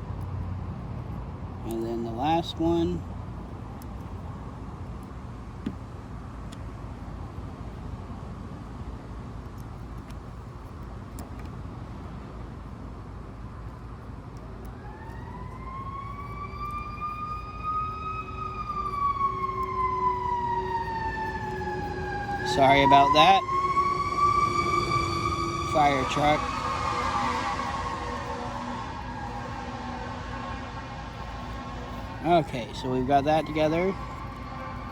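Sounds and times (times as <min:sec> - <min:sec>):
fire truck siren wailing: 0:14.6 - 0:34.9.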